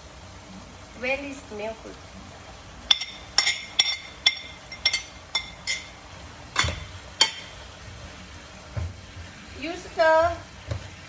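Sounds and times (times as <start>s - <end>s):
metal utensil clinking against pan: 2.9s - 6.0s, 6.6s - 7.6s.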